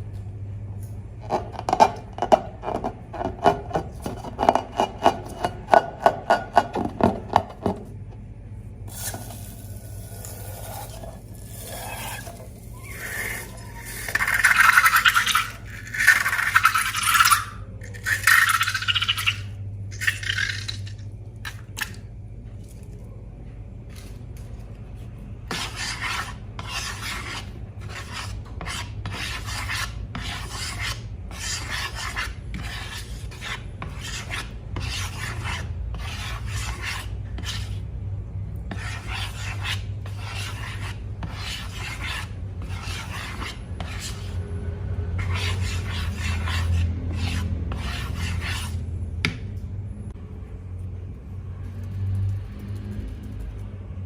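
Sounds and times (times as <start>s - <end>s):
steady low hum: 0.0s - 54.0s
rasping scraping strokes: 9.8s - 19.5s, 25.5s - 37.8s, 38.7s - 44.5s, 45.2s - 48.8s.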